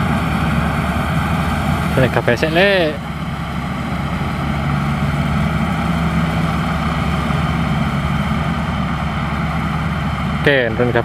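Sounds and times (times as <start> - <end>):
combine harvester running: 0.0 - 11.0.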